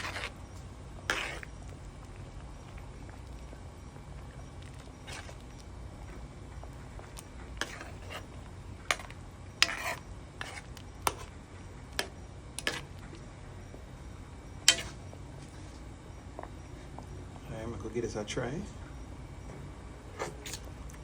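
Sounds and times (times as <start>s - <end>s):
broth simmering: 0.0s - 18.1s
metal spoon clinking against pot: 14.7s - 15.0s.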